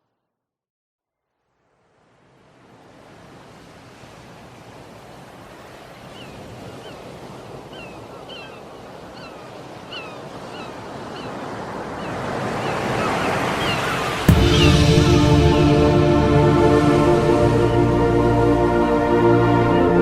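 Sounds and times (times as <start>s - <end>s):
sea waves washing on shore: 1.9s - 20.0s.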